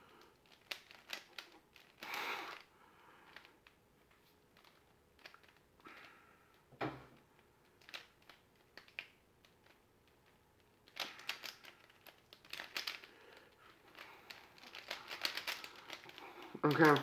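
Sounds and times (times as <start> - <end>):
puzzle cube clicking and rattling: 0.2 - 2.7, 4.5 - 5.8, 7.6 - 17.0.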